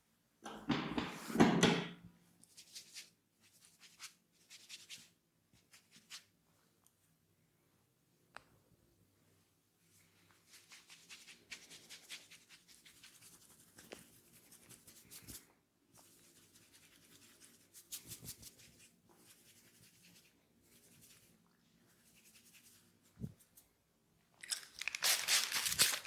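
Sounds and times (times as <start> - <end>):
fingers scratching hair: 10.5 - 15.4, 21.9 - 23.4.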